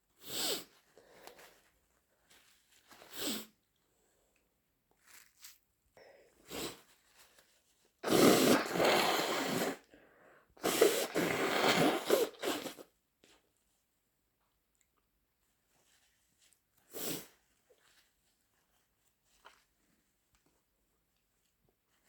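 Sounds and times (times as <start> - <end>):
loud nose blowing: 0.2 - 0.7, 3.0 - 3.5, 6.4 - 6.8, 8.0 - 12.9, 16.9 - 17.3
faint sniffs: 0.2 - 3.6, 5.4 - 12.9, 16.8 - 17.8.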